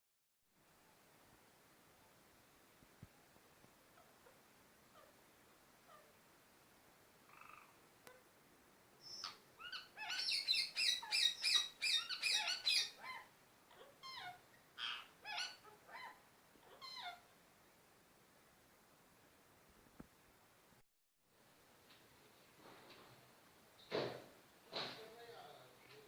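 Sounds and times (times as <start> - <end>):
parrot calling: 7.3 - 8.2, 9.0 - 17.3.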